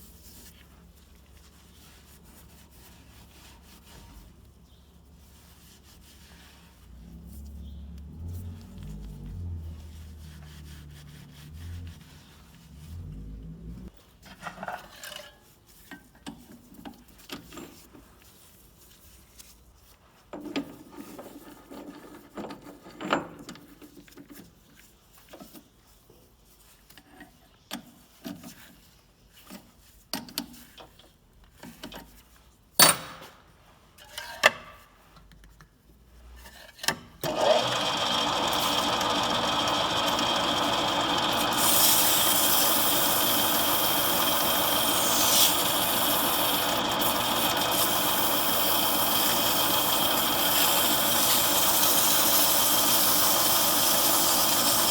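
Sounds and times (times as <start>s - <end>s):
scraping tools clean by hand: 37.7s - 54.9s.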